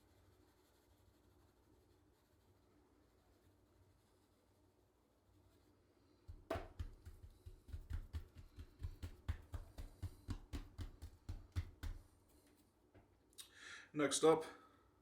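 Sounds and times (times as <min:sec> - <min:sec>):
rhythmic soft thumps with clicks: 0:06.3 - 0:12.1.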